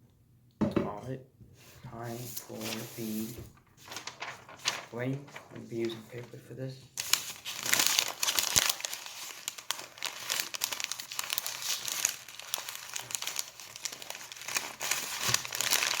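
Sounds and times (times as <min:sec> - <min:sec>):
paper crumpling: 0:02.0 - 0:06.4, 0:07.0 - 0:16.0.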